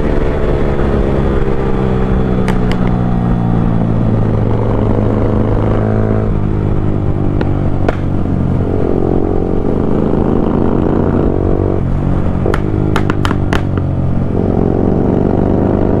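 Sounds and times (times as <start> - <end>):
motorcycle engine revving: 0.0 - 16.0
exhaust pops and crackles: 2.4 - 3.9, 7.3 - 8.8, 12.0 - 14.2.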